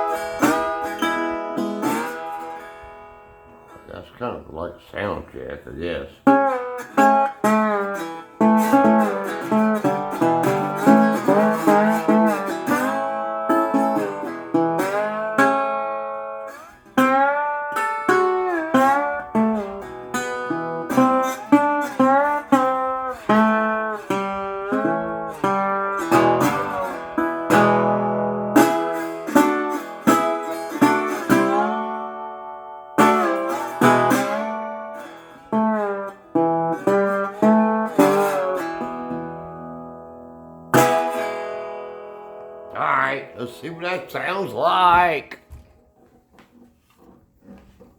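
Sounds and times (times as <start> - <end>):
blues guitar with reverb: 0.0 - 5.2, 5.8 - 45.7.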